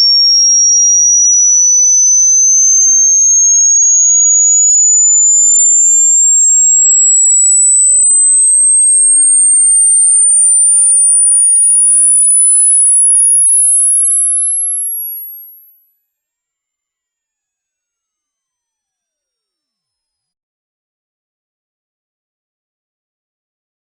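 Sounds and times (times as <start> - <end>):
high-pitched electronic tone: 0.0 - 15.6.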